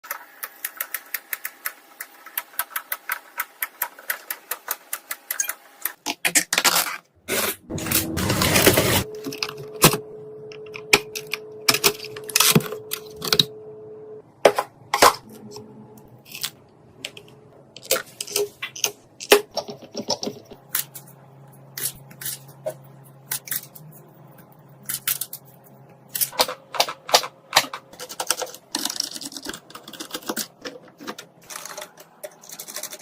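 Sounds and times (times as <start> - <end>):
faint steady hum: 7.7 - 33.0.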